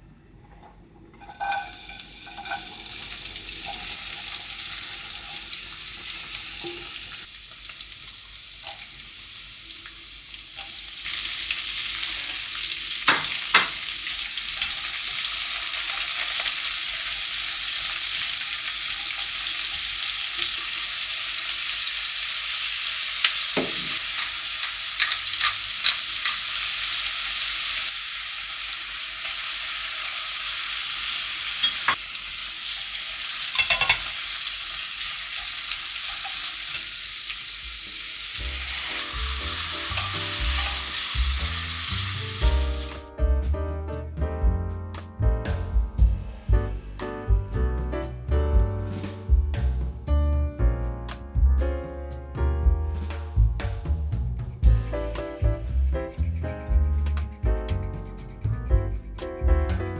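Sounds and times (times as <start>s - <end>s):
utensil clinking against pan: 1.2s - 2.8s, 33.5s - 34.2s, 38.9s - 41.6s
food sizzling in a frying pan: 1.2s - 43.1s.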